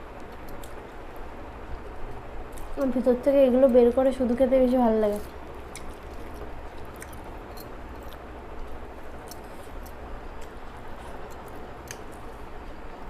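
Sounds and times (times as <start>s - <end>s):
low background hum: 0.0s - 13.0s
person chewing food: 5.3s - 12.8s.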